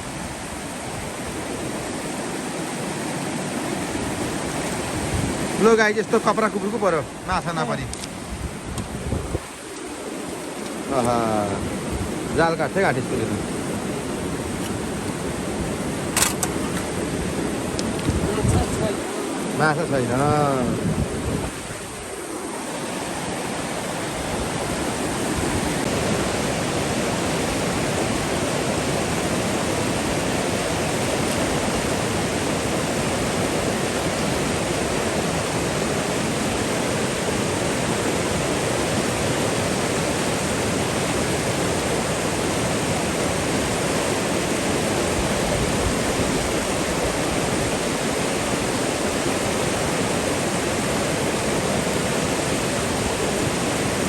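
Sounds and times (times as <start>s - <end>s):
river rushing: 0.0s - 54.0s.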